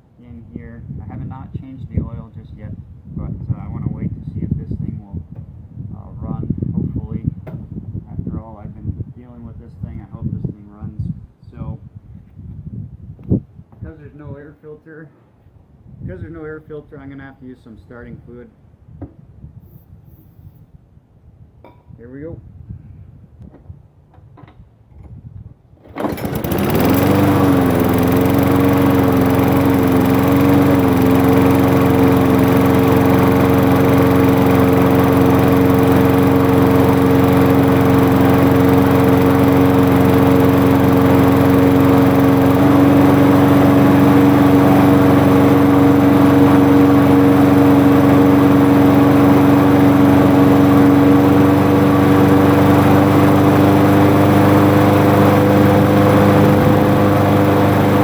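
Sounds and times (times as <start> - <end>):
lawn mower engine running: 25.8 - 58.0.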